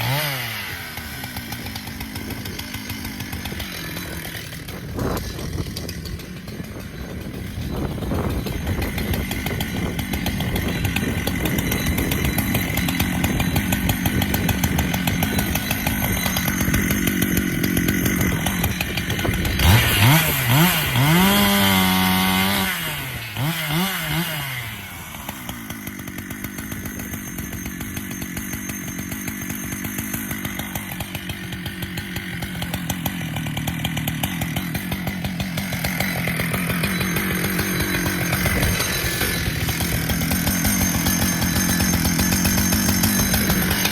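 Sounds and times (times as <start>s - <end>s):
chainsaw running: 0.0s - 43.9s.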